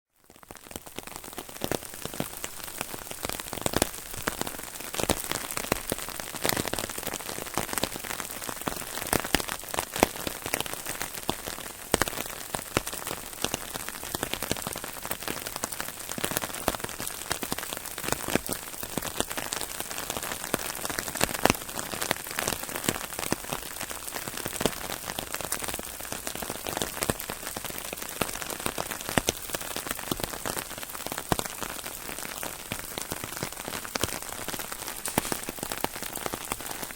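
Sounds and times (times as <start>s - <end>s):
raindrops hitting umbrella: 0.2s - 36.9s
rain hissing: 31.8s - 36.9s.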